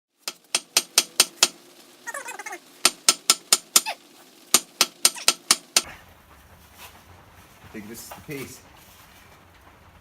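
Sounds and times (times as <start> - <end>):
sharp knocks: 2.8 - 3.8, 4.6 - 5.9.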